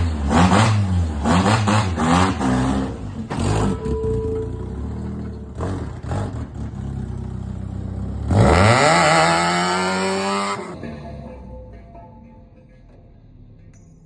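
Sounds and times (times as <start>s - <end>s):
vehicle engine revving: 0.0s - 10.8s.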